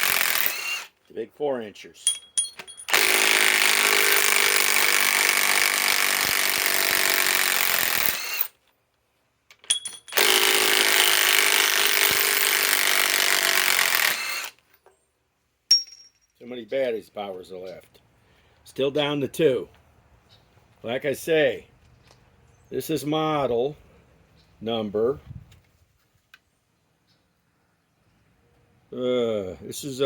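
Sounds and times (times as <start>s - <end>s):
impact wrench hammering: 9.7s - 14.2s, 15.7s - 16.2s.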